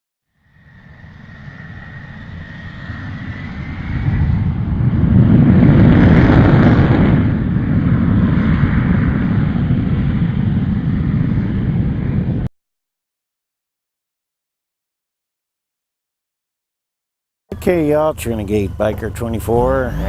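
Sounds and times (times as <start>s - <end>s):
vehicle rumble: 17.5s - 20.0s.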